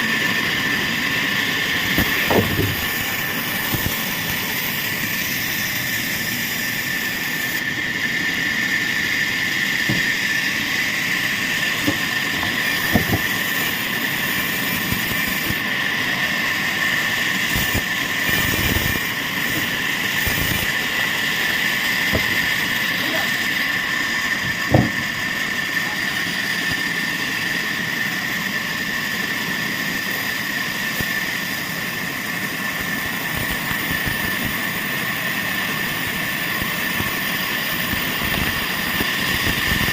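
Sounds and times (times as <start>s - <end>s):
sawmill machinery whining: 0.0s - 39.9s
sharp knocks: 9.9s - 10.1s, 24.7s - 25.0s.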